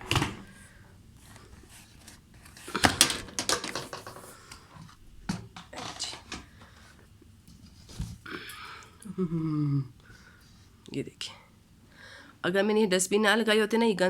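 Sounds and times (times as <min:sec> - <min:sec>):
plastic clicks and clatter: 0:01.3 - 0:06.5.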